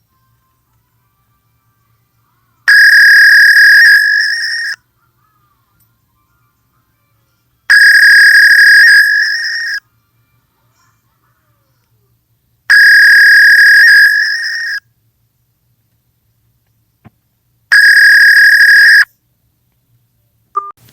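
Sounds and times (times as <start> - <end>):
fax machine beeps: 2.7 - 4.8, 7.7 - 9.8, 12.7 - 14.8, 17.7 - 19.1.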